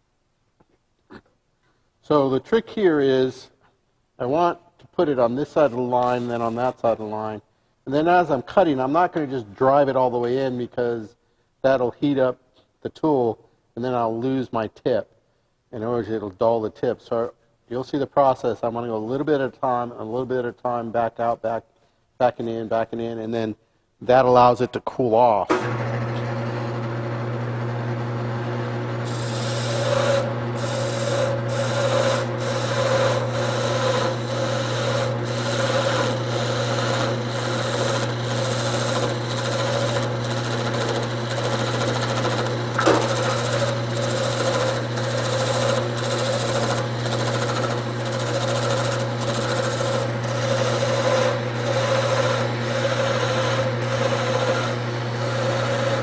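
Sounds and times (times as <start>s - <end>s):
tool scraping spinning wood: 5.4s - 7.1s, 25.5s - 56.0s
lathe motor humming: 25.5s - 56.0s.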